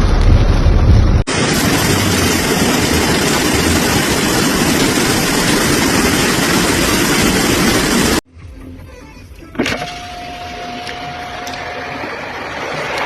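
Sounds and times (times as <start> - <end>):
heavy rain pouring: 0.0 - 8.2, 10.3 - 13.0.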